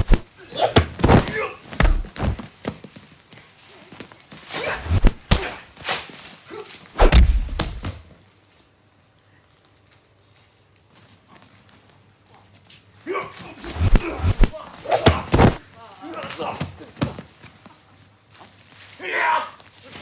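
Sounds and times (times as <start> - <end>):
swishes: 0.0 - 1.2, 4.6 - 5.6, 7.0 - 8.0, 13.6 - 15.6
fight thuds: 0.0 - 2.5, 4.6 - 5.6, 7.0 - 8.1, 13.6 - 15.6.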